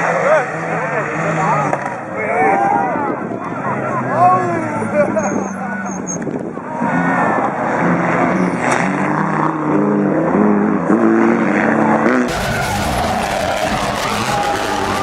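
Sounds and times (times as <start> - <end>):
rally car engine at full throttle: 0.0 - 15.0
rally car engine running steadily: 6.8 - 15.0.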